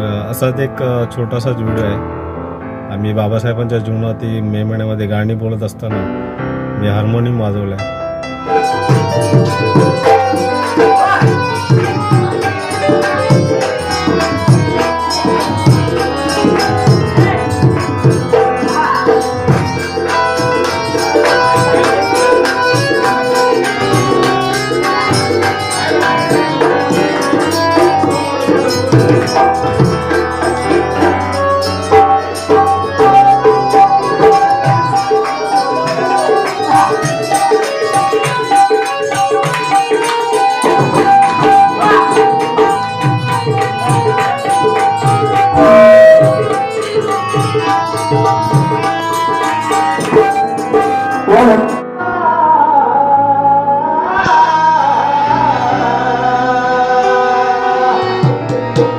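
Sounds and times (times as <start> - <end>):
harmonium melody: 0.0 - 58.9
hand drum beat: 8.4 - 51.8.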